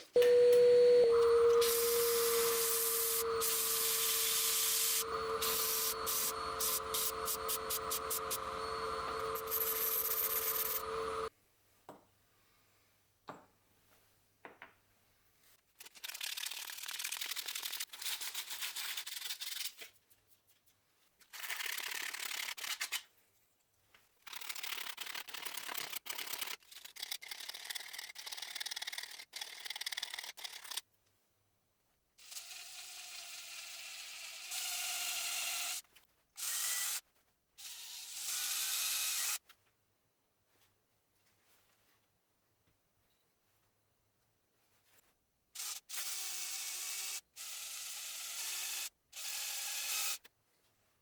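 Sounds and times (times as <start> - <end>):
faint steady tone: 0.2 - 11.3
wood sanding: 1.2 - 11.3.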